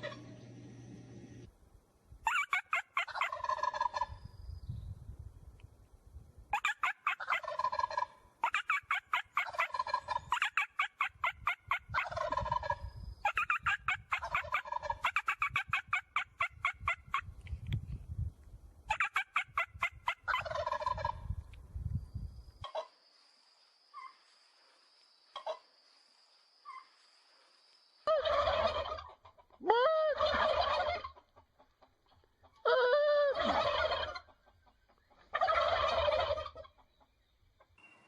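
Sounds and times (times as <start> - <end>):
turkeys gobbling: 0.0 - 1.5, 2.3 - 4.1, 6.6 - 17.2, 18.9 - 21.3, 25.3 - 25.6, 28.1 - 37.1.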